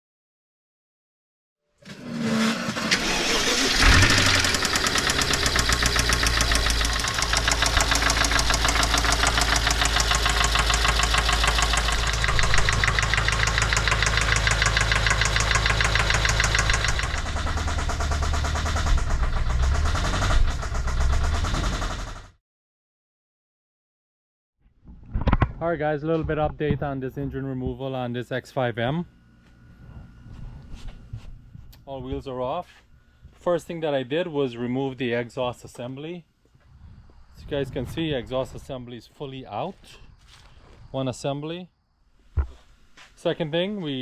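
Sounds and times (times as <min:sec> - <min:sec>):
car engine starting and idling: 0:01.9 - 0:22.4
rapid knocking from engine: 0:03.9 - 0:22.4.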